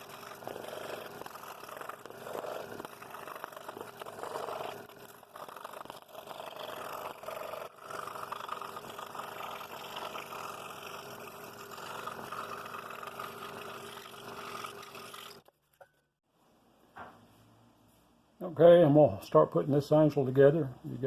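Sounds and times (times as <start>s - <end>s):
power tool working wood: 0.0s - 15.5s.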